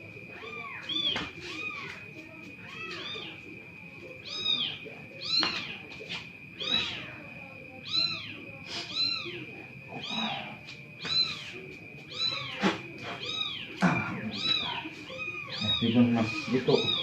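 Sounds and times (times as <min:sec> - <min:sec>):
kitten meowing: 0:12.1 - 0:12.6, 0:14.3 - 0:15.7.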